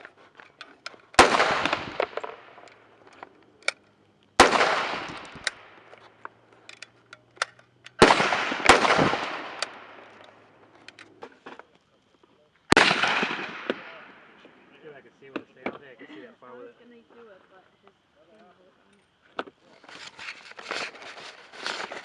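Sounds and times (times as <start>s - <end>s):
faint sharp cracks: 0.0s - 11.9s, 12.7s - 14.6s
rifle shots echoing: 1.2s - 3.0s, 4.4s - 5.9s, 8.0s - 10.5s, 12.7s - 14.4s.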